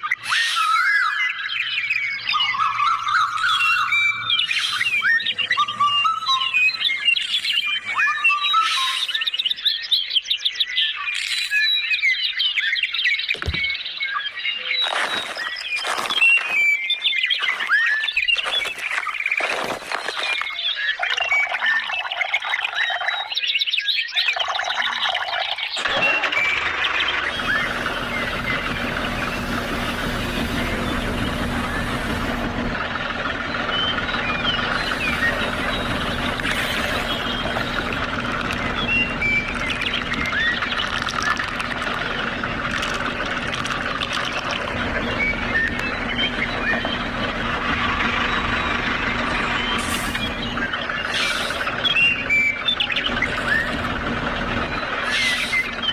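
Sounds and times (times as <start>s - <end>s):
falling bird whistles: 0.0s - 9.6s, 32.8s - 55.9s
birds chirping and trilling: 0.0s - 55.9s
small motor humming: 2.4s - 8.0s, 25.8s - 55.9s.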